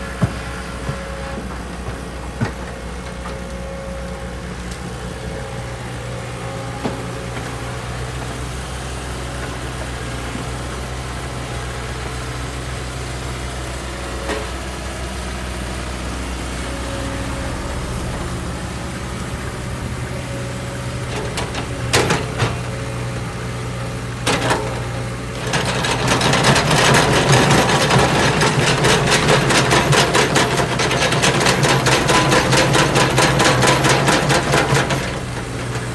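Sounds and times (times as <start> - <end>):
diesel engine running: 0.0 - 35.9
loud rhythmic hammering: 25.4 - 35.2.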